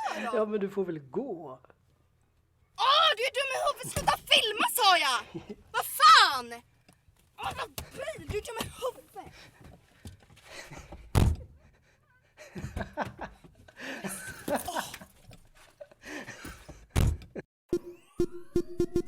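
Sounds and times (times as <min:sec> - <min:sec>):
woman's agitated voice: 0:02.8 - 0:06.6, 0:07.4 - 0:09.4.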